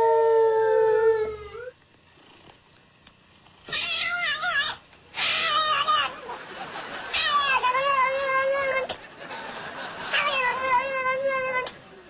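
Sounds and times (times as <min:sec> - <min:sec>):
cat meowing: 0:03.7 - 0:06.1, 0:10.2 - 0:11.7.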